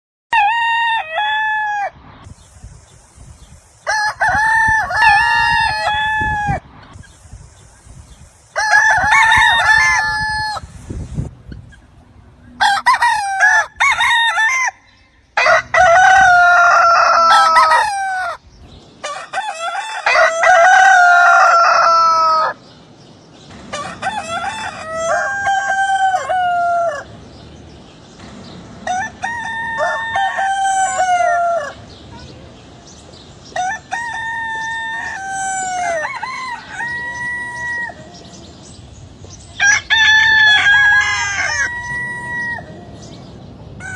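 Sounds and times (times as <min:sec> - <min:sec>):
roosters crowing: 0:00.3 - 0:02.0, 0:03.8 - 0:07.0, 0:08.5 - 0:22.8, 0:23.4 - 0:32.1, 0:33.1 - 0:43.9.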